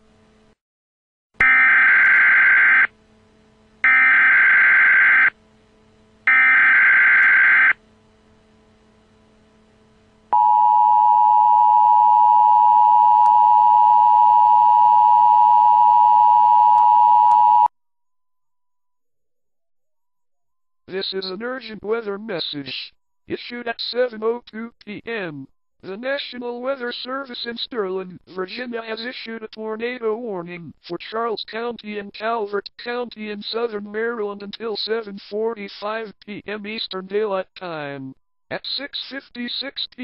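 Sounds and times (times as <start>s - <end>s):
faint low hum: 1.8s - 19.0s.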